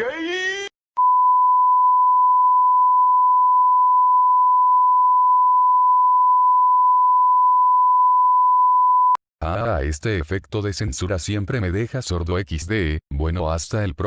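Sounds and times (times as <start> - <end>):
steady sine tone bleep: 1.0 - 9.2.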